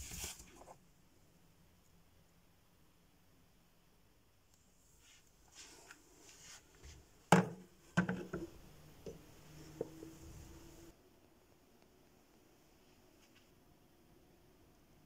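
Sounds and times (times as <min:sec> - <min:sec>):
knocks on hard surface: 0:07.3 - 0:08.5.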